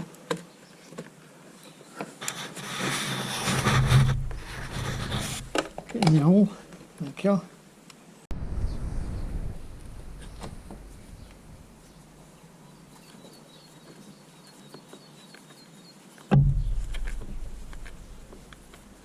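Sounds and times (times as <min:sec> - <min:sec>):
heavy low thump: 0:16.3 - 0:18.5.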